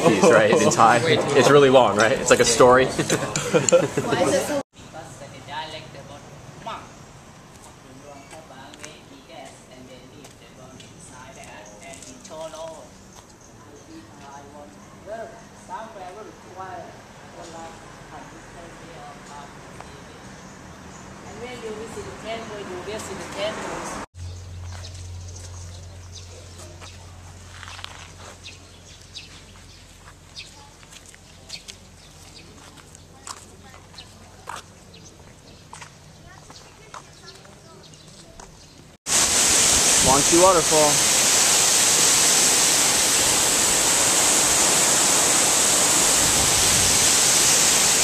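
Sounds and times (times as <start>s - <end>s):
waterfall rushing: 39.1s - 48.0s.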